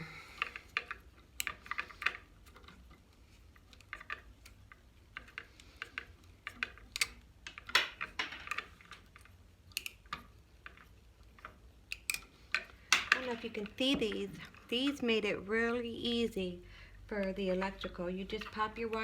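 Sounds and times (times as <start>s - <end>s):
plastic light switch clicks and rustles: 9.7s - 10.3s.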